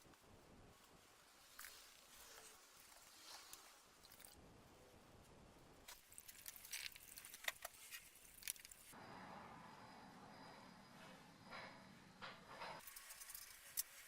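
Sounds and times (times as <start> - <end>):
small clicks and scrapes: 5.9 - 9.0, 12.6 - 14.0.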